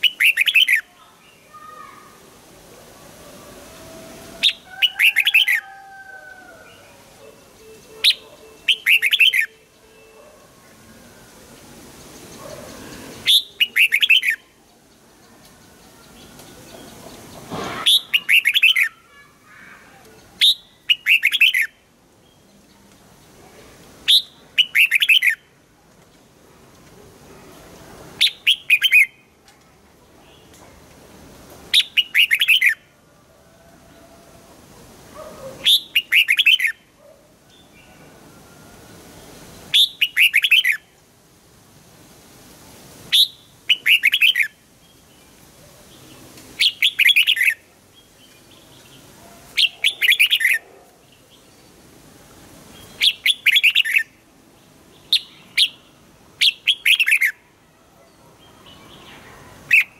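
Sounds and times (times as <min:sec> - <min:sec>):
bird singing warbling phrases: 0:00.0 - 0:02.2, 0:04.4 - 0:05.6, 0:06.6 - 0:10.4, 0:12.1 - 0:23.0, 0:24.0 - 0:25.5, 0:28.2 - 0:29.4, 0:31.7 - 0:32.8, 0:35.2 - 0:36.8, 0:39.7 - 0:40.9, 0:43.1 - 0:45.1, 0:45.9 - 0:51.7, 0:52.7 - 0:54.2, 0:55.0 - 0:57.5, 0:58.5 - 0:59.9.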